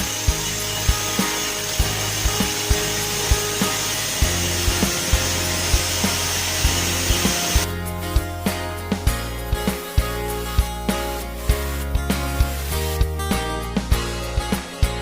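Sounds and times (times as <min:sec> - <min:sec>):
dense hissing noise: 0:00.0 - 0:07.7
music with steady beat and bass: 0:00.0 - 0:15.0.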